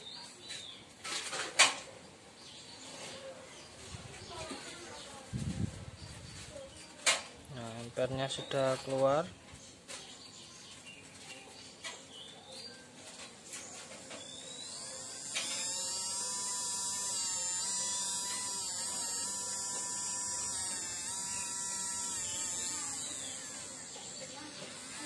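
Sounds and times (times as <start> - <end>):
small motor high whine: 13.8 - 25.0.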